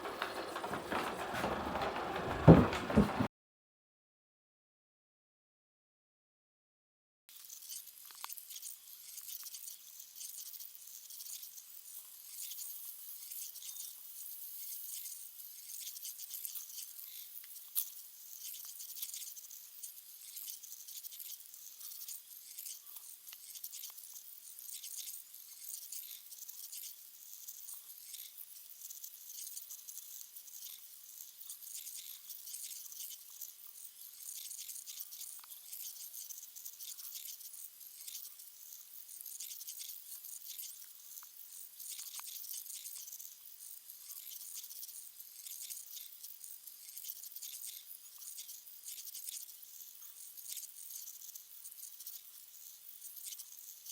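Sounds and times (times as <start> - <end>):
robot vacuum cleaner running: 0.0 - 3.3.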